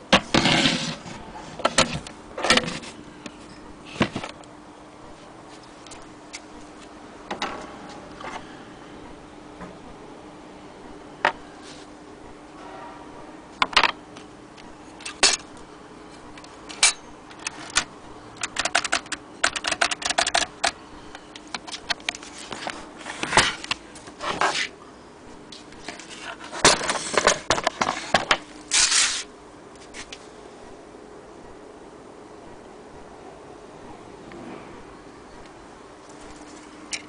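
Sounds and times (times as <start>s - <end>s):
typewriter clicking and clacking: 17.3s - 20.8s.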